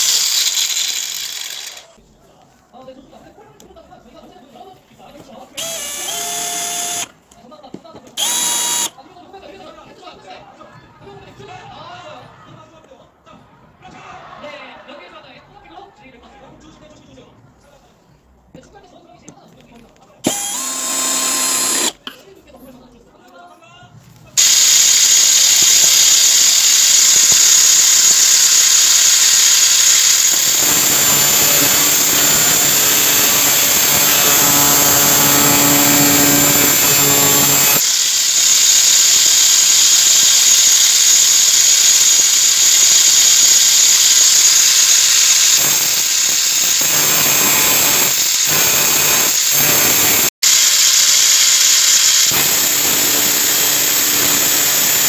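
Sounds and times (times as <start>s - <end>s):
angle grinder whine: 0.0s - 1.9s, 5.6s - 7.1s, 8.2s - 8.9s, 20.2s - 22.0s, 24.4s - 55.0s.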